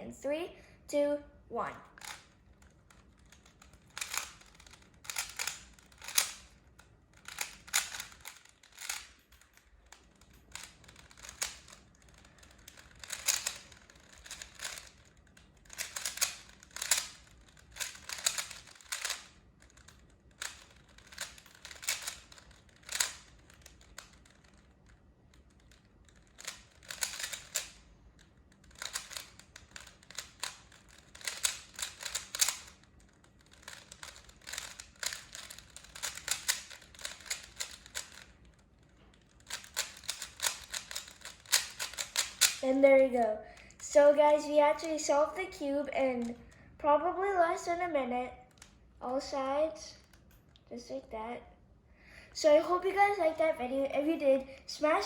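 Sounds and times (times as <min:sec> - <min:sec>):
plastic cube clicks: 0:02.0 - 0:06.6, 0:07.2 - 0:24.6, 0:25.3 - 0:27.9, 0:28.7 - 0:32.8, 0:33.5 - 0:38.4, 0:39.4 - 0:42.6.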